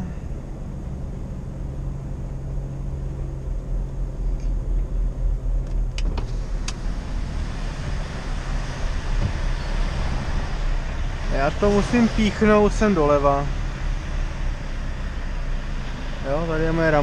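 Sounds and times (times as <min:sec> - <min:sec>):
diesel engine hum: 0:00.0 - 0:17.0
rushing noise: 0:06.2 - 0:17.0.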